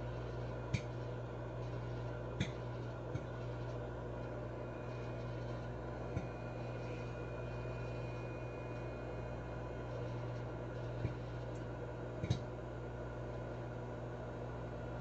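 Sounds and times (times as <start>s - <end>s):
microwave oven humming: 0.0s - 15.0s.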